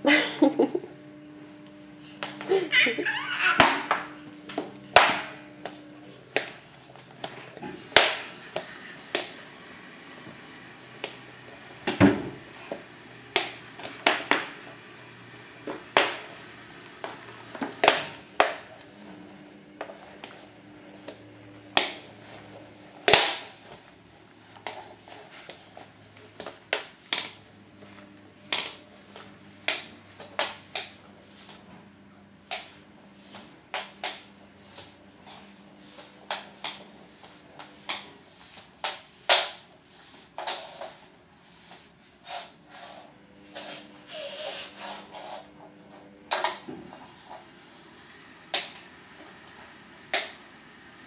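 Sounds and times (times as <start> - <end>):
steady low hum: 0.0 - 24.6.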